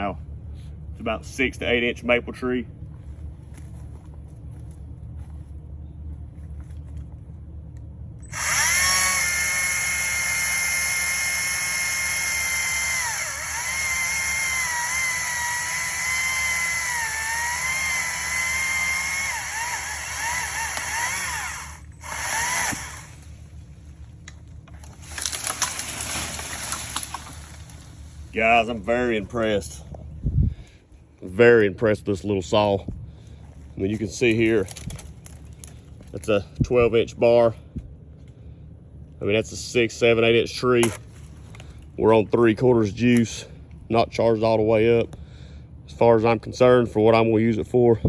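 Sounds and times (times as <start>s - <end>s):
steady low rumble: 0.0s - 8.8s, 19.2s - 48.0s
electric chainsaw cutting wood: 8.2s - 23.3s, 25.0s - 27.9s.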